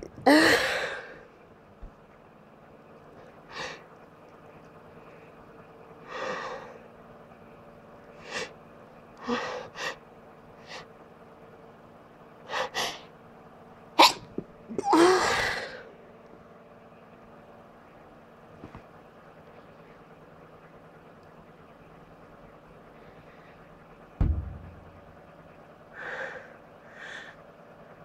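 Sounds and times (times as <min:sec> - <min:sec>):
breathy in-breaths: 0:06.0 - 0:06.9, 0:25.9 - 0:27.4
person sneezing: 0:14.0 - 0:15.6.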